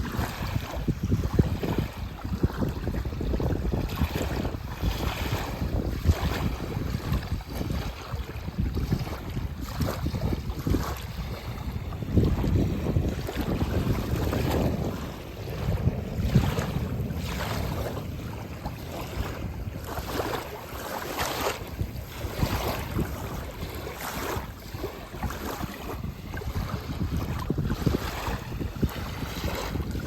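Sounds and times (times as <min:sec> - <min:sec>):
water washing in surges: 0:00.0 - 0:30.0
wind rumbling on microphone: 0:00.0 - 0:30.0.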